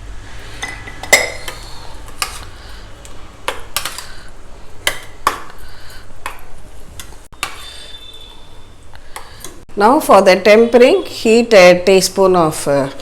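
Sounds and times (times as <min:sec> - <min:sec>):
spoon stirring in a bowl: 0:00.4 - 0:09.6.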